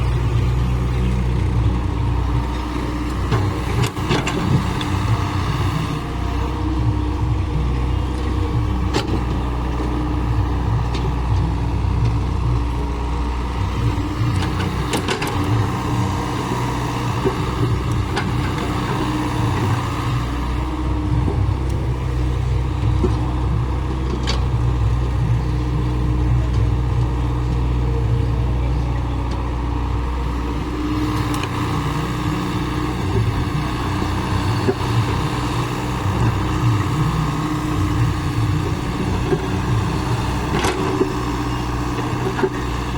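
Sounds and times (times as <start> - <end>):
heavy machine engine running: 0.0 - 42.9.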